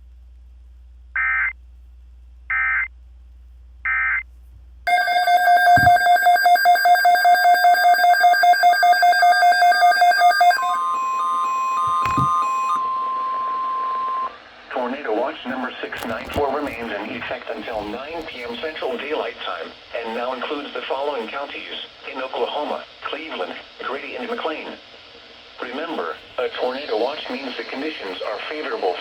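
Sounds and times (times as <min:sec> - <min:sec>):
digital data bursts: 0:04.9 - 0:12.8
harsh pulsing alert tone: 0:04.9 - 0:13.0
steady single-pitch alarm tone: 0:04.9 - 0:14.4.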